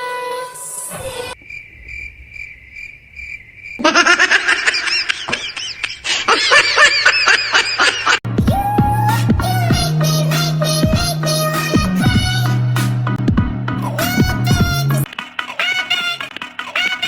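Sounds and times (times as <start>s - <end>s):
cricket chirping: 1.4s - 6.0s.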